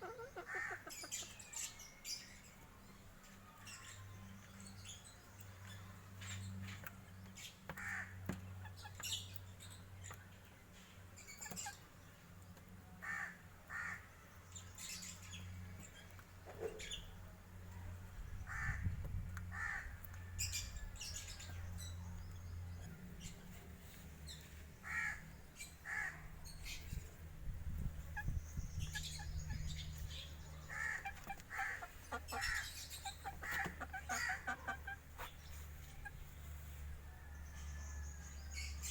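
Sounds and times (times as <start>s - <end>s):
chickens clucking: 0.0s - 1.8s, 26.6s - 37.0s.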